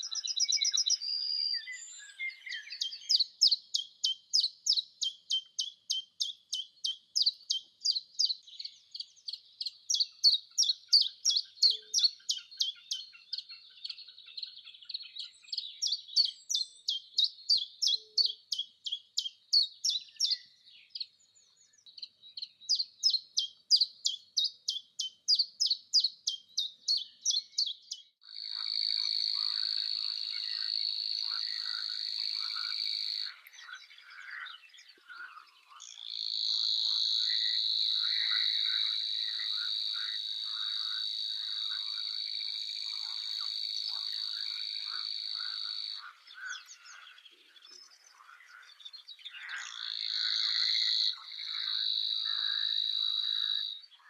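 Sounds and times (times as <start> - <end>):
bird chirping: 0.0 - 54.0.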